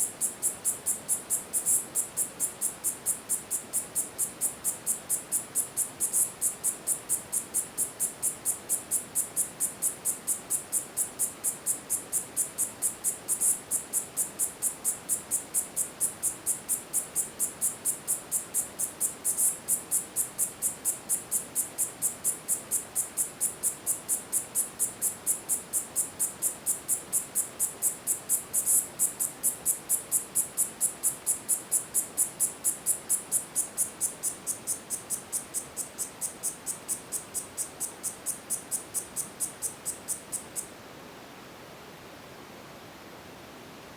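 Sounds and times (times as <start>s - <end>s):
cicada ticking pulses: 0.2s - 40.7s.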